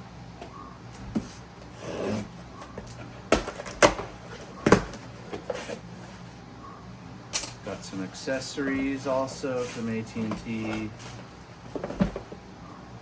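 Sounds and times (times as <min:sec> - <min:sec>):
box sliding on table: 0:08.3 - 0:12.2.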